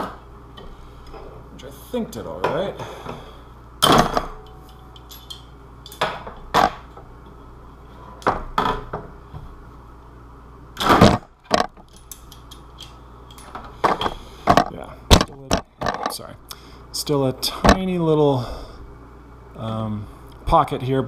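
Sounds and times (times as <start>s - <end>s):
armour knocking and scraping: 10.9s - 11.8s.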